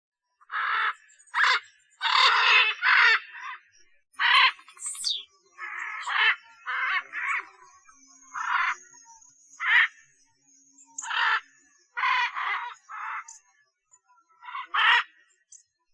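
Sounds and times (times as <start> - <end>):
macaw screeching: 0.5 - 3.6, 4.2 - 7.6, 8.3 - 8.8, 9.6 - 10.0, 11.0 - 13.4, 14.4 - 15.1
high falling bird call: 4.2 - 5.2.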